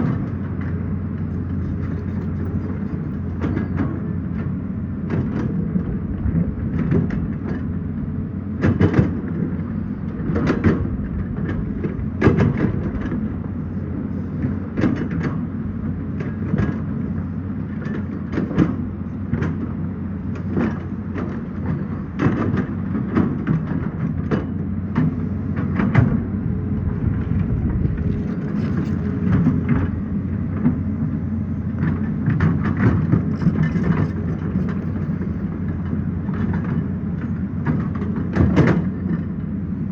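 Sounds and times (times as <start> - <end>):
excavator diesel engine running: 0.0 - 39.9
sharp metal clanks and knocks: 31.8 - 36.8.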